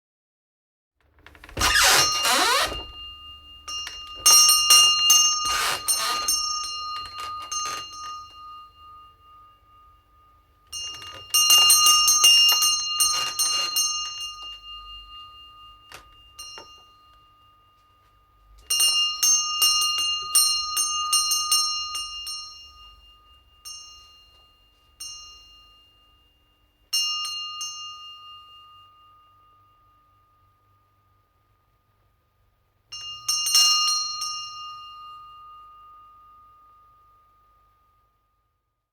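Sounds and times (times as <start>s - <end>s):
door squeaking open: 1.1s - 3.1s, 5.4s - 6.4s
shop door bell jangling: 1.4s - 17.7s.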